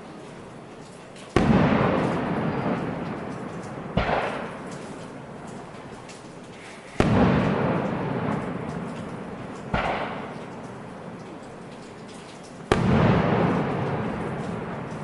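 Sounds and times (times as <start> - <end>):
fireworks bangs with rumbling tails: 1.2 - 15.0.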